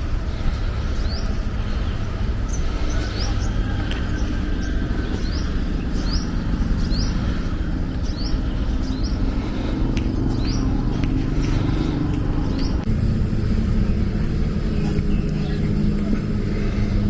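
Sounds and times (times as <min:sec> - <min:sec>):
road traffic rumble: 0:00.0 - 0:17.0
bird chirping: 0:00.2 - 0:12.9.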